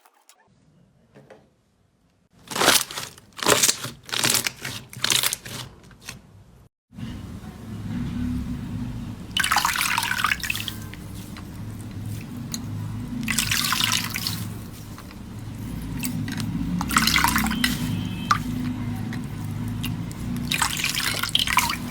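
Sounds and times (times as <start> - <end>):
slime squeezed crackling: 2.5 - 5.6.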